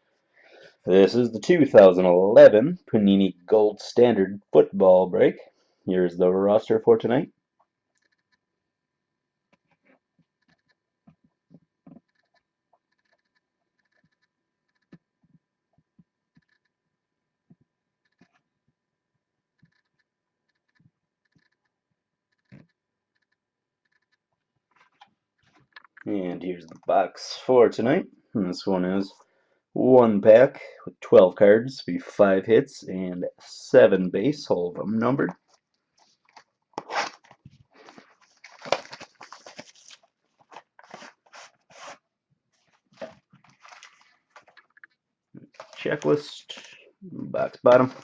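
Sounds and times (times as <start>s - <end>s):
cardboard rustling: 35.4s - 44.7s, 45.5s - 46.7s
plastic wrap crinkling and tearing: 36.0s - 42.0s, 42.6s - 44.8s.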